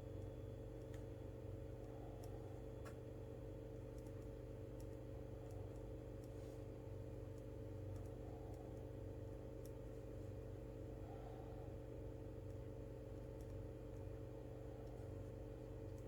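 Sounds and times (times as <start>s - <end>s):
low electrical hum: 0.0s - 16.0s
faint clicks: 1.8s - 3.0s, 3.8s - 6.4s, 7.3s - 8.9s.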